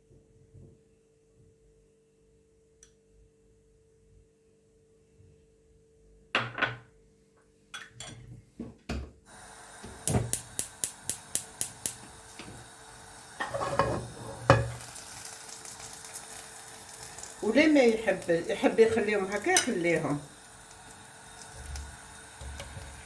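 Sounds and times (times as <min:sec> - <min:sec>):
frying hiss: 0:09.3 - 0:23.0
metal utensils clattering: 0:13.4 - 0:15.8, 0:17.0 - 0:20.2.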